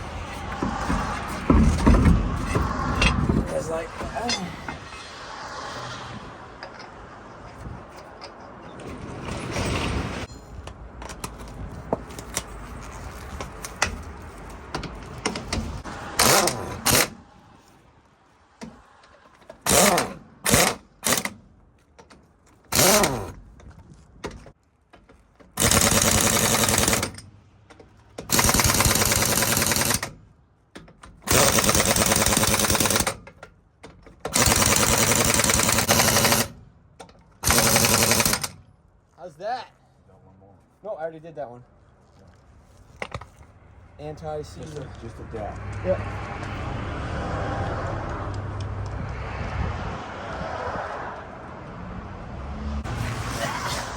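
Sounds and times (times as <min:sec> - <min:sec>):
impact wrench hammering: 0:16.2 - 0:17.2, 0:22.7 - 0:23.4, 0:25.6 - 0:27.2, 0:28.2 - 0:30.1, 0:31.3 - 0:33.2, 0:34.2 - 0:36.6, 0:37.4 - 0:38.5.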